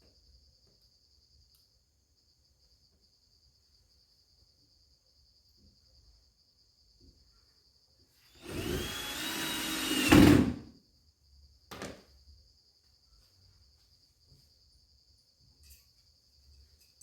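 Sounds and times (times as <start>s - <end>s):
crickets chirping: 0.0s - 17.0s
power tool running: 8.4s - 10.7s.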